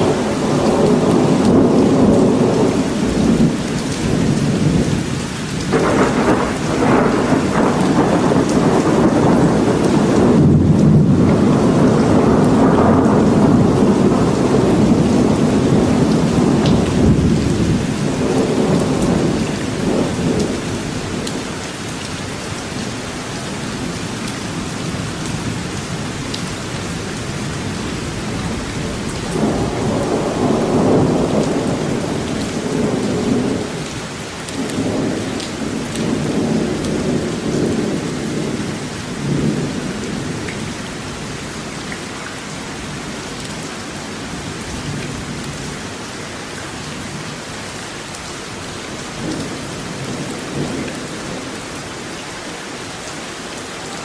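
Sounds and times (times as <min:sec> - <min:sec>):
thunder rumbling: 0:00.0 - 0:21.4, 0:23.8 - 0:33.9, 0:34.5 - 0:40.7
steady rain falling: 0:00.0 - 0:54.0.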